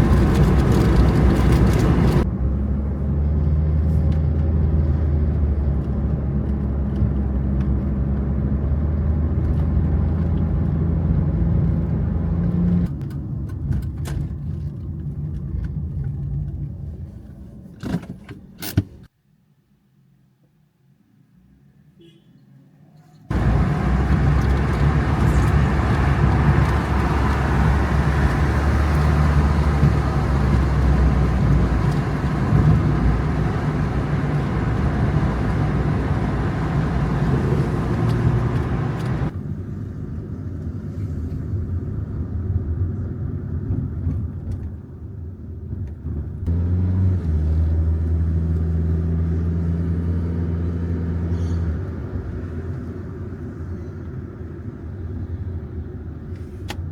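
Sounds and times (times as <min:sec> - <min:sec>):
vehicle engine and road noise: 0:00.0 - 0:19.1, 0:23.1 - 0:56.9.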